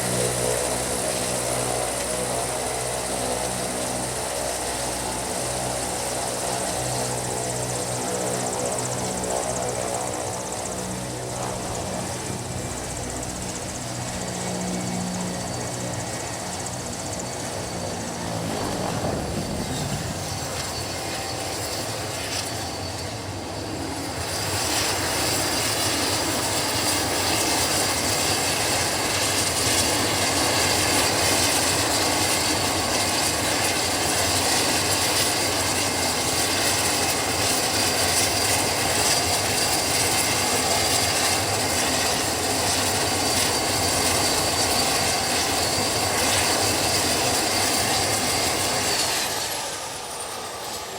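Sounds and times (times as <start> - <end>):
turboprop engines whining: 0.0 - 50.9.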